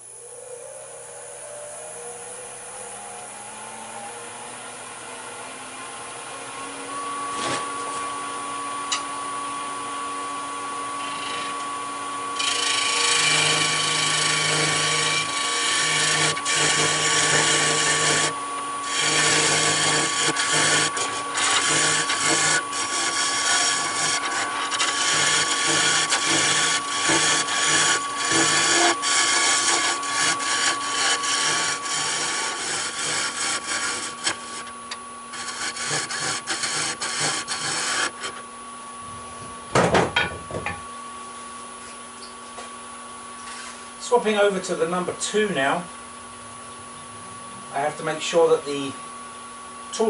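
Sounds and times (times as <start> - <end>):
wood lathe whine: 0.0 - 39.0
tool scraping spinning wood: 7.0 - 8.1, 10.1 - 38.5.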